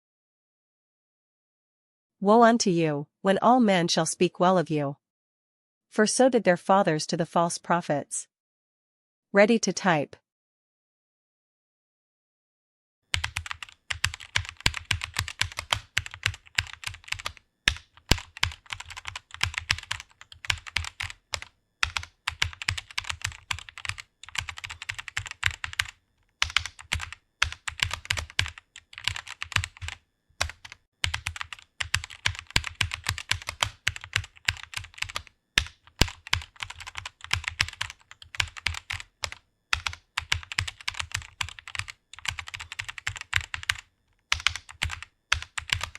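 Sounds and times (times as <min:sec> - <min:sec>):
fast typing on keyboard: 0:13.1 - 0:45.9.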